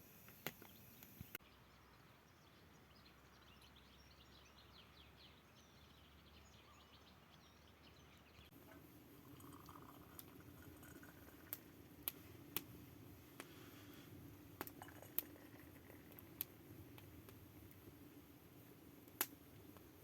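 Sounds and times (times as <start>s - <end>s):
faint steady hum: 8.4s - 20.0s.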